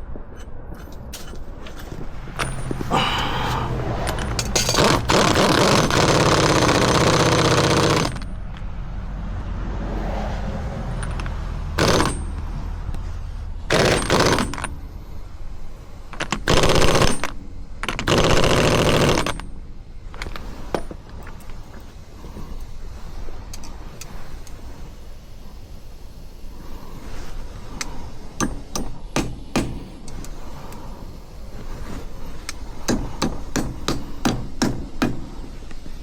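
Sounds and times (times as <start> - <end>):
pneumatic impact wrench hammering: 2.3 - 8.6, 11.0 - 12.6, 13.7 - 15.1, 16.1 - 22.8, 26.6 - 36.0.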